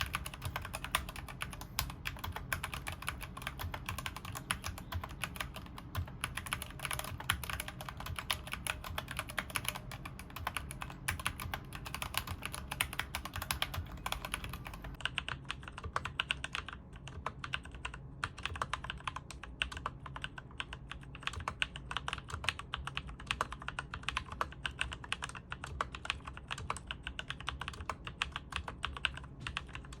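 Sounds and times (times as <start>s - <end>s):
fast mechanical keyboard typing: 0.0s - 30.0s.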